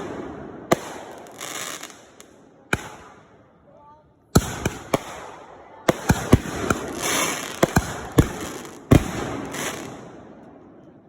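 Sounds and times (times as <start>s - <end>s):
firework bangs: 0.0s - 3.2s, 4.3s - 10.3s
crackling firework bursts: 5.9s - 10.2s.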